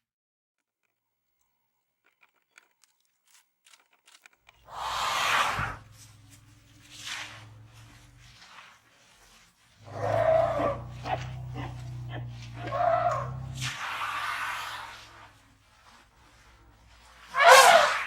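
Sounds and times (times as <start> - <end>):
faint crackling: 4.6 - 18.0
elephant breathy blast: 4.7 - 8.5, 9.8 - 18.0.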